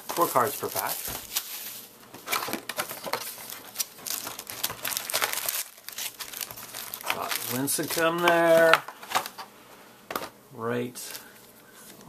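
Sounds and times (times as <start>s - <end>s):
foil wrapper crinkling and tearing: 0.1s - 9.3s.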